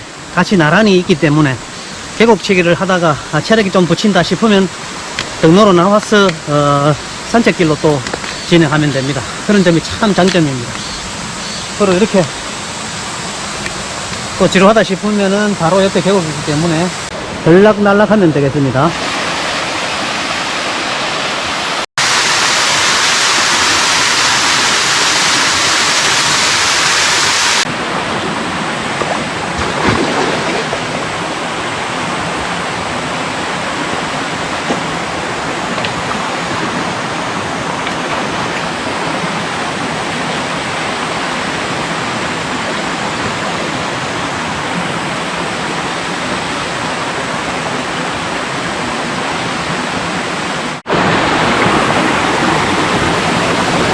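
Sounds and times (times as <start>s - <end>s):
stream rushing over rocks: 0.0s - 53.9s.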